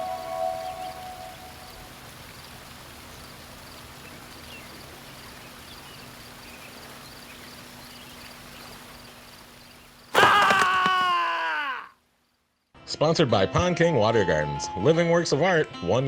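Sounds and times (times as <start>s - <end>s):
low steady hum: 0.0s - 10.1s
waterfall splashing: 0.0s - 11.7s
insects chirping: 0.0s - 12.8s.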